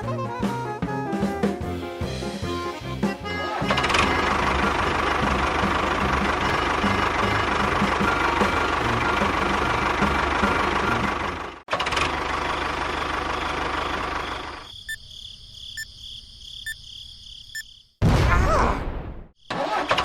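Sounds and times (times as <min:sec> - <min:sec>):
engine knocking and pulsing: 0:03.6 - 0:14.6.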